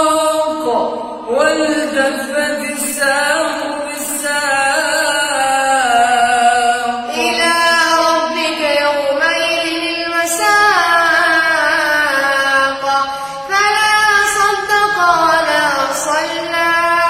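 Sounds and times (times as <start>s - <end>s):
person chanting melodically: 0.0s - 17.0s.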